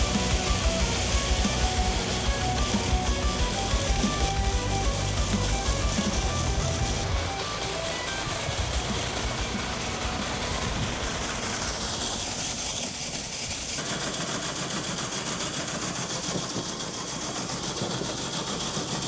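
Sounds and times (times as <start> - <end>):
tractor engine running: 0.0 - 12.6
constant hiss: 0.0 - 13.9.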